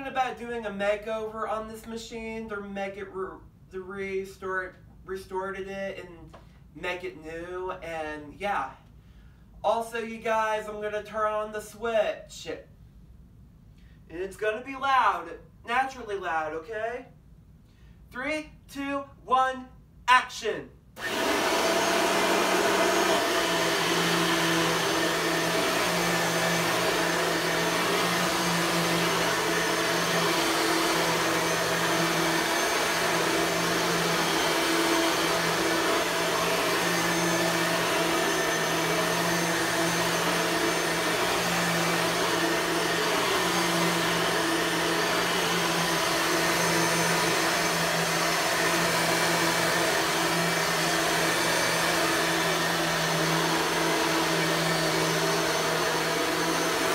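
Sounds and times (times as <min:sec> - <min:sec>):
vacuum cleaner running: 0:21.0 - 0:56.9.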